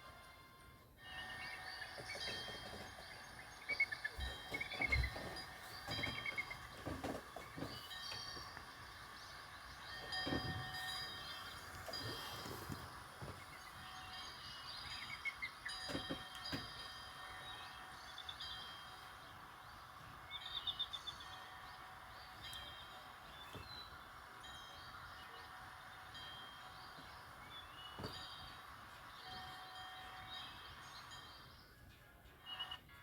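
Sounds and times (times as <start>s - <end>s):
phone ringtone chimes and trills: 0.0s - 19.3s
steady hiss: 1.7s - 31.6s.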